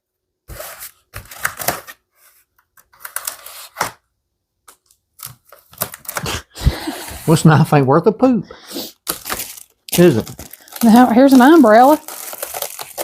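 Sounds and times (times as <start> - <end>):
packaging crackling and tearing: 5.2 - 6.4, 9.0 - 13.0.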